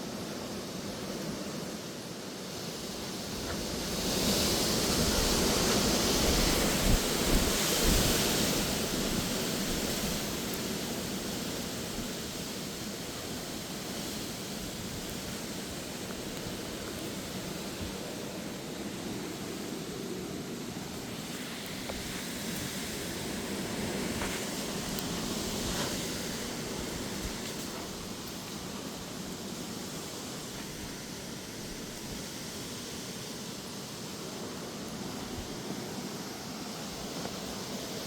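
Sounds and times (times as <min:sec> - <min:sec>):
gusty wind rushing: 0:02.6 - 0:10.5, 0:11.1 - 0:32.4.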